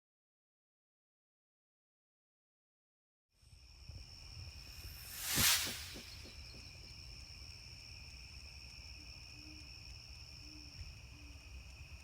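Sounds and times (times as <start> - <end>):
high insect drone: 3.4 - 12.0.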